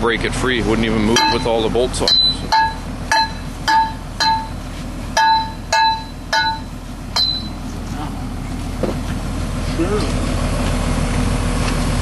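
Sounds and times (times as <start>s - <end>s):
hammer clanging on steel: 1.0s - 7.6s.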